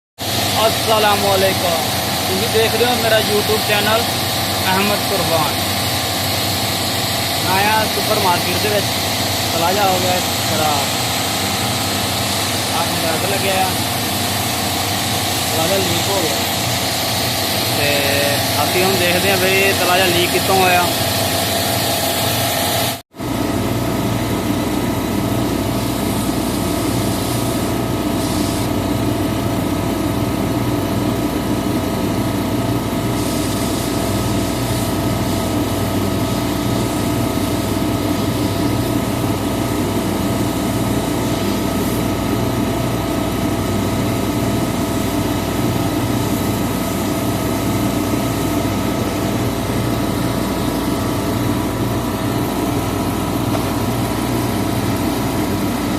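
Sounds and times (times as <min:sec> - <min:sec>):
refrigeration compressor humming: 0:00.2 - 0:55.9.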